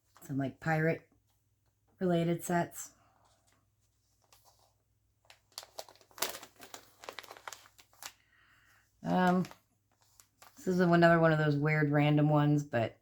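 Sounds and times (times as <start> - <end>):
plastic packaging crinkling: 3.2 - 8.4, 9.0 - 10.9.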